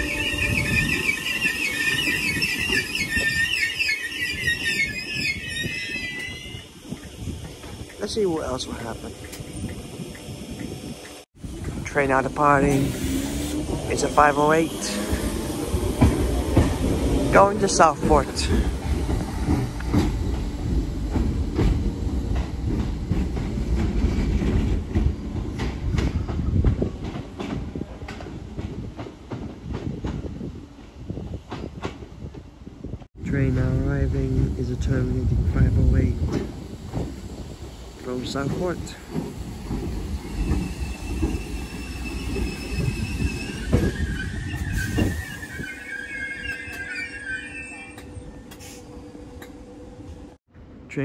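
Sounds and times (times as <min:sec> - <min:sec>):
train wheels squealing: 0:00.0 - 0:07.2, 0:39.8 - 0:49.0
train low rumble: 0:00.0 - 0:47.1, 0:47.7 - 0:51.0
train wheels clicking over rail joints: 0:15.0 - 0:30.3, 0:36.2 - 0:45.2.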